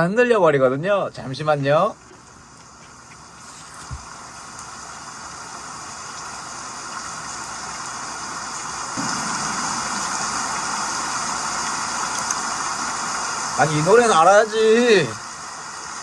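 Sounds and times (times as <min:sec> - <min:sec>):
steady rushing hiss: 0:00.0 - 0:16.0
deeper rushing layer: 0:09.0 - 0:11.5.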